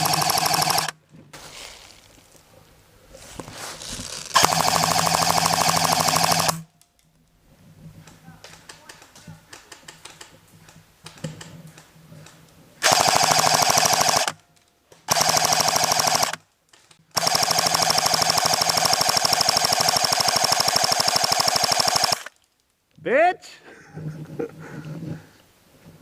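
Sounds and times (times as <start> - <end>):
airsoft gun firing full-auto: 0.0 - 0.9, 4.4 - 6.6, 12.8 - 14.4, 15.1 - 16.4, 17.2 - 22.3.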